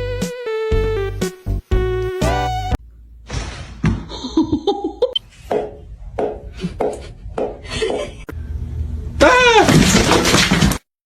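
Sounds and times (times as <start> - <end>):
music: 0.0 - 2.8.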